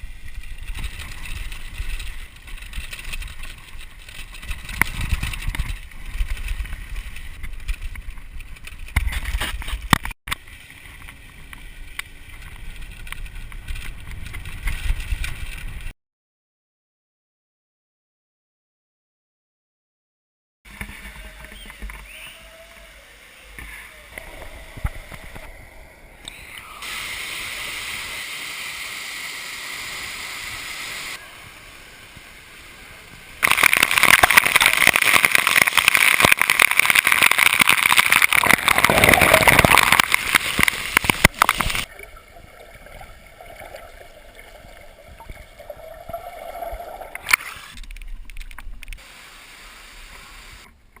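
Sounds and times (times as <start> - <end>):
outdoor noise: 0.0 - 15.9, 20.6 - 51.0.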